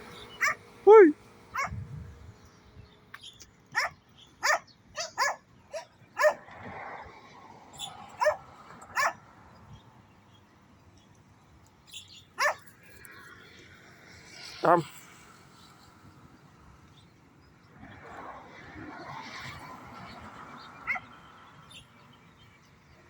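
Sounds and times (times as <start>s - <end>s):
dog barking: 0.4s - 0.6s, 1.6s - 1.8s, 3.8s - 6.4s, 8.2s - 9.2s, 12.4s - 12.6s.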